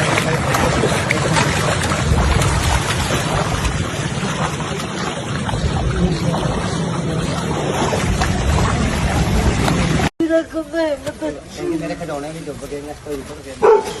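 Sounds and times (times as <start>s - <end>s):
low engine drone: 0.0s - 10.1s
wind buffeting microphone: 0.0s - 10.1s.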